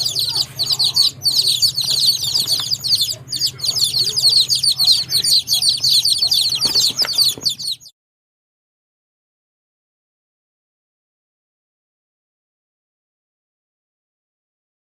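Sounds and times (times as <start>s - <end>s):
baby chicks peeping: 0.0s - 7.9s
steady low hum: 0.0s - 7.9s.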